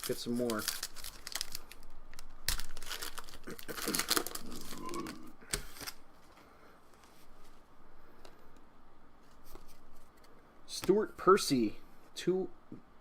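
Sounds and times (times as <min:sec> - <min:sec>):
card pack wrapper crinkling: 0:00.0 - 0:06.0.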